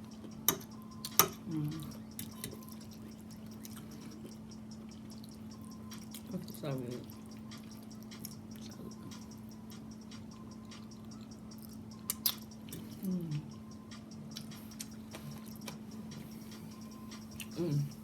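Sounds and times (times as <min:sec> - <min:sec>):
person chewing food: 0:00.0 - 0:18.0
steady low hum: 0:00.0 - 0:18.0
person humming mm: 0:01.4 - 0:02.0, 0:12.8 - 0:13.5, 0:17.4 - 0:18.0.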